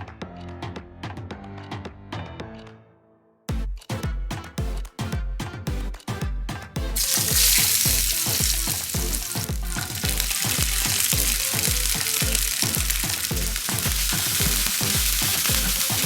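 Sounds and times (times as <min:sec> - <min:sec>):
electronic dance music: 0:07.0 - 0:16.0
food sizzling in hot oil: 0:07.0 - 0:16.0.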